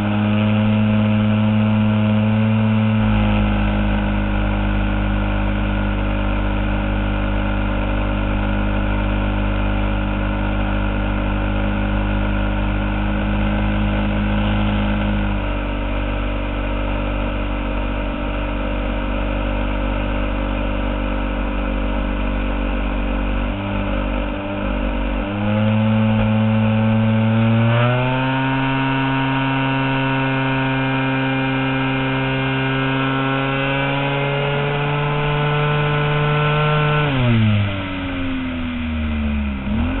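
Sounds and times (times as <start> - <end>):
model airplane engine running: 28.2 - 37.0.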